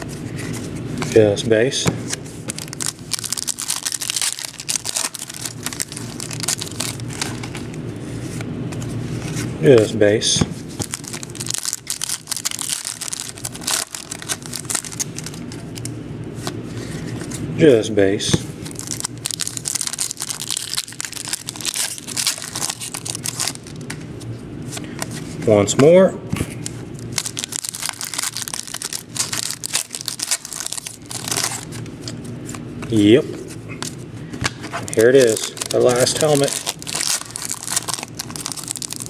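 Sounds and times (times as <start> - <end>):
cards and packaging rustling: 2.5 - 7.8, 10.8 - 17.4, 18.6 - 24.0, 26.6 - 32.6, 33.8 - 39.0.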